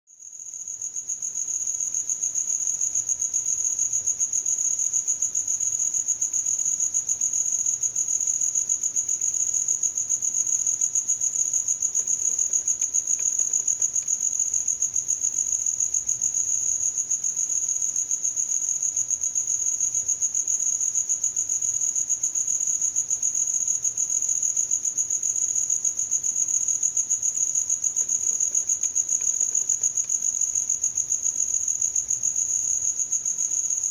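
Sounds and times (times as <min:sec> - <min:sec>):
cricket chirping: 0:00.1 - 0:33.9.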